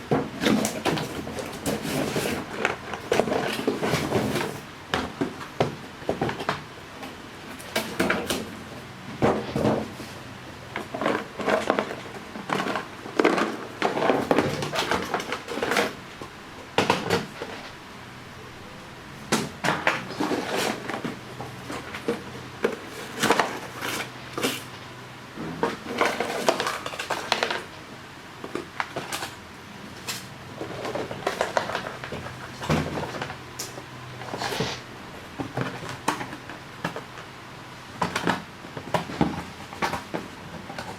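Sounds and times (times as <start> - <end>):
hard objects clattering: 0.0 - 17.8, 19.2 - 27.8, 28.4 - 37.3.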